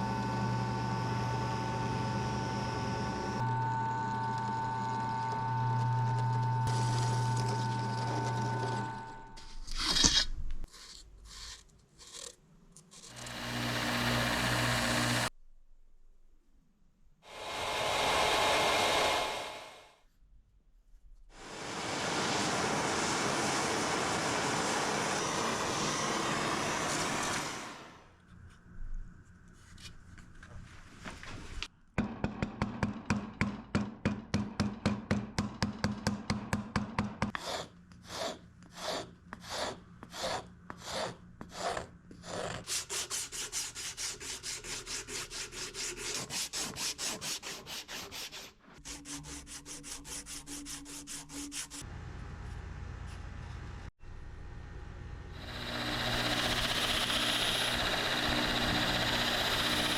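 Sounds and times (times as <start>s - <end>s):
loud rushing noise: 17.3s - 19.9s
hand tool rasping on workpiece: 37.3s - 51.8s.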